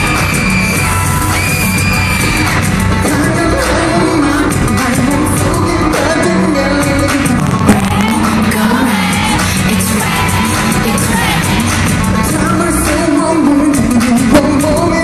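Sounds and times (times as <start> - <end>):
loud dance-pop backing track: 0.0 - 15.0
man singing: 3.0 - 15.0.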